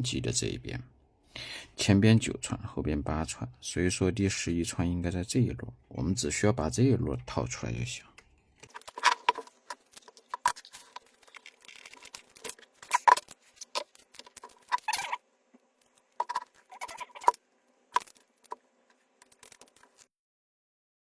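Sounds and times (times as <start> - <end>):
faint steady hum: 0.0 - 20.1
hand tools clicking and scraping: 8.6 - 15.2.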